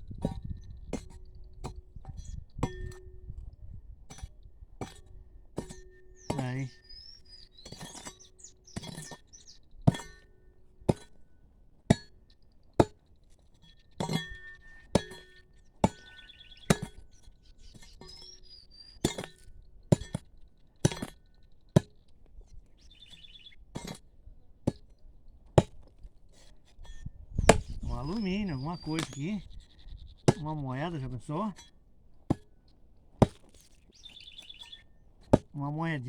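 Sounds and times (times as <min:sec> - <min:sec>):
hoe chopping into ground: 0:07.6 - 0:11.2, 0:14.0 - 0:22.0, 0:22.9 - 0:29.5, 0:30.3 - 0:35.6
sharp metallic clink: 0:28.8 - 0:29.4.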